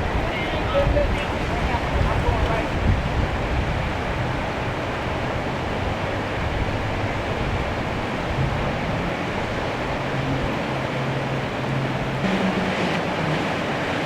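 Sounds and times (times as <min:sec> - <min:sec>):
floodwater rushing: 0:00.0 - 0:14.0
low engine hum: 0:00.0 - 0:14.0.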